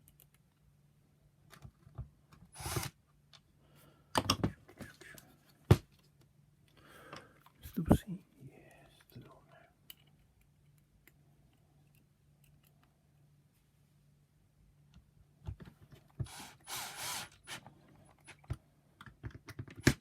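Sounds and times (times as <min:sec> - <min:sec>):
plastic parts clicking and knocking: 0:04.1 - 0:04.9, 0:18.3 - 0:20.0.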